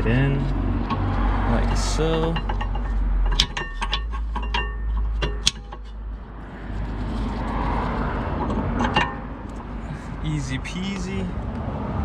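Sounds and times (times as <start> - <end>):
brake pads clinking on metal clips: 0.0 - 6.0, 8.4 - 9.7.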